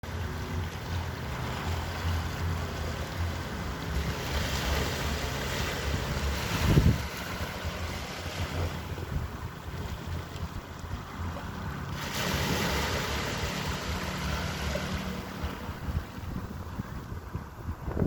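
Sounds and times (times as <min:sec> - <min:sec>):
sea waves washing: 0:00.0 - 0:18.0
wind rumbling on microphone: 0:00.0 - 0:18.0.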